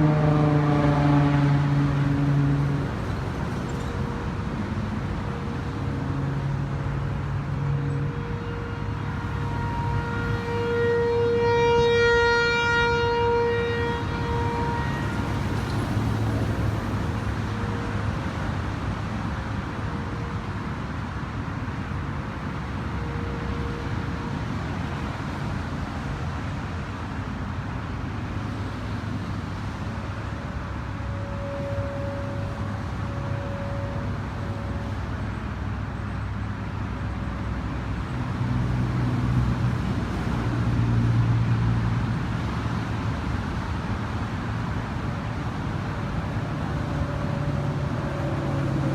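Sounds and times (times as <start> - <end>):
rotating warning siren: 0.0 - 26.3, 29.2 - 35.8, 44.6 - 48.9
traffic noise: 0.0 - 48.9.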